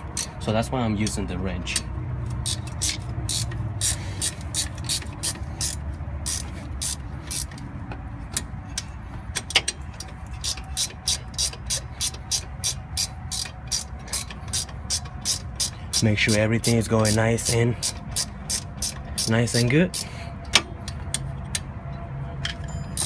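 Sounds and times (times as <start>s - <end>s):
ratcheting wrench clicking: 0.0s - 0.4s, 1.7s - 21.7s, 22.4s - 23.0s.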